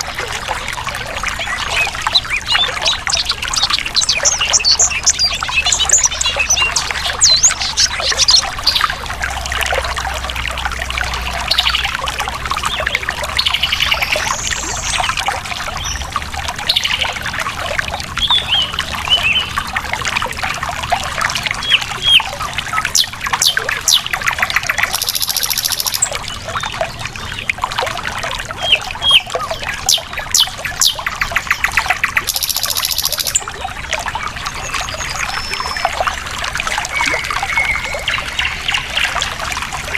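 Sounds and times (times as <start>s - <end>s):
birds singing and calling: 0.0s - 10.2s, 11.0s - 19.8s, 20.9s - 27.6s, 28.5s - 39.8s
stream water trickling: 0.0s - 39.9s
fast buzzing bird trills: 24.8s - 26.1s, 32.3s - 33.4s.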